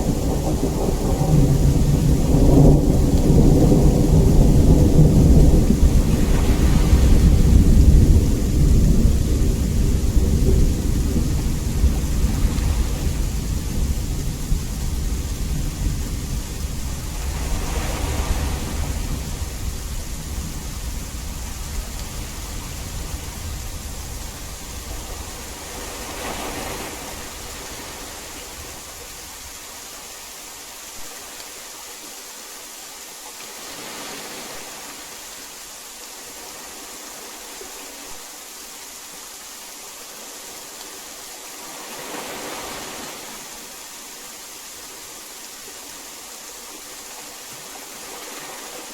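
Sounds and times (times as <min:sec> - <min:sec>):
low rumble of thunder: 0:00.0 - 0:29.5
heavy rain hissing: 0:00.0 - 0:48.9.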